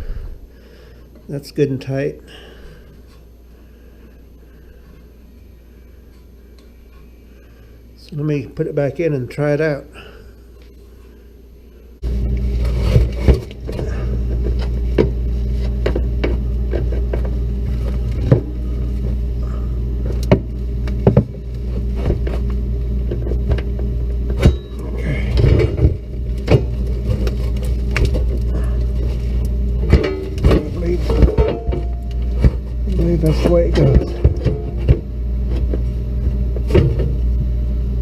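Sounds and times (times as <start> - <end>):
motor humming: 12.0 - 38.0.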